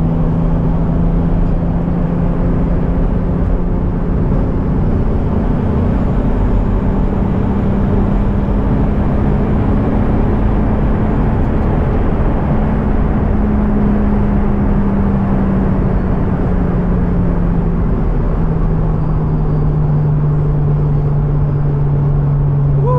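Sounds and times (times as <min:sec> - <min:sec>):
car engine: 0:00.0 - 0:22.9
road noise: 0:00.0 - 0:22.9.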